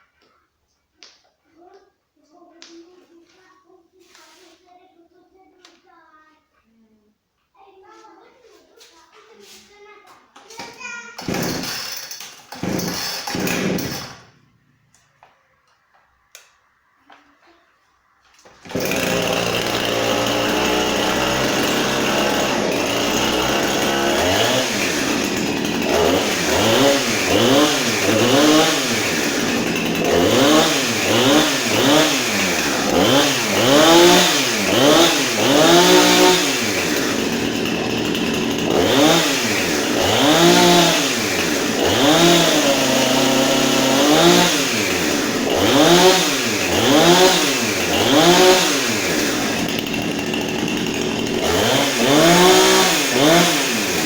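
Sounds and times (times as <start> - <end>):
chainsaw revving: 11.2 - 14.4, 18.6 - 54.0.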